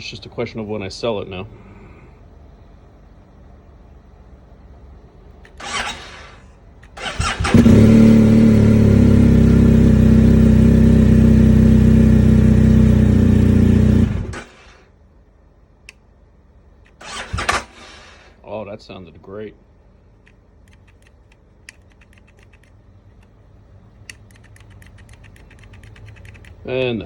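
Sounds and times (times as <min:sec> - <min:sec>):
motorcycle engine running: 0:07.2 - 0:14.5.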